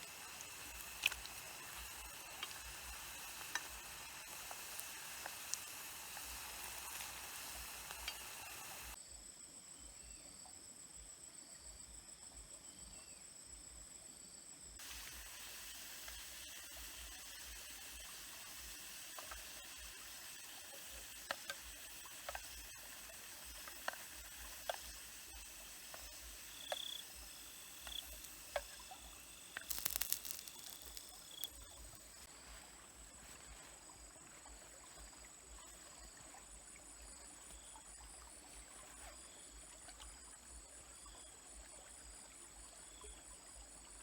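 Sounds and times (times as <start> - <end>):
food frying with sizzling pops: 0.0 - 9.0, 14.8 - 36.4
small stream rushing: 0.0 - 9.0, 14.8 - 40.6
insects chirping faintly: 0.0 - 44.0.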